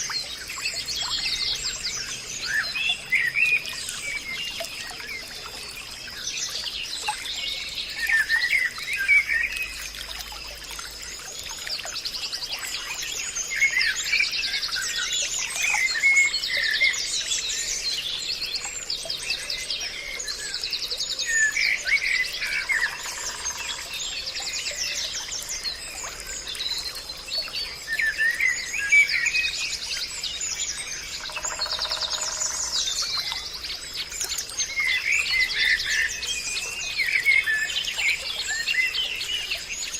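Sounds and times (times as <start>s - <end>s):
birds chirping and trilling: 19.9s - 29.6s, 30.2s - 39.9s.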